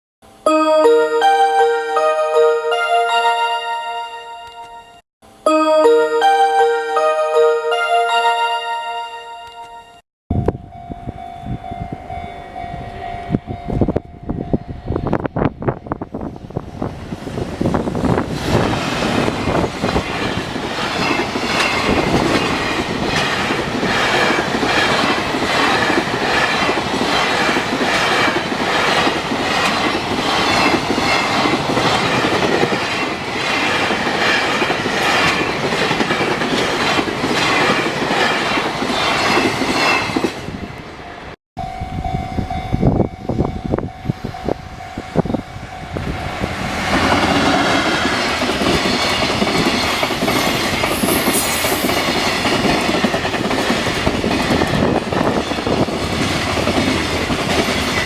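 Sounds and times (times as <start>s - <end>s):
crossing warning bell ringing: 0.3s - 16.6s, 19.0s - 58.0s
train wheels clacking over rails: 17.8s - 40.4s, 46.6s - 58.0s.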